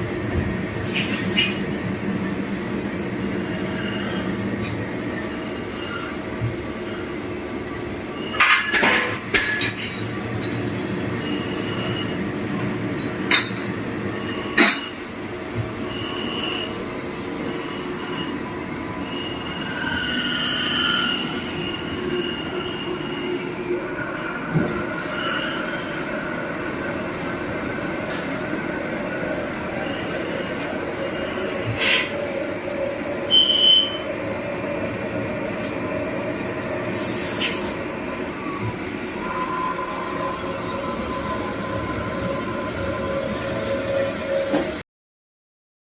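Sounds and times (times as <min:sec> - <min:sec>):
machine shop machinery noise: 0:00.0 - 0:44.8.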